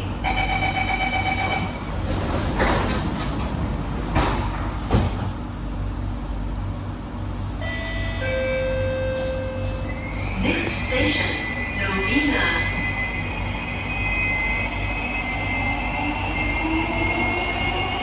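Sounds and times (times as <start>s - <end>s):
door closing warning tone: 0.2s - 2.3s
sliding doors shutting: 1.2s - 5.4s.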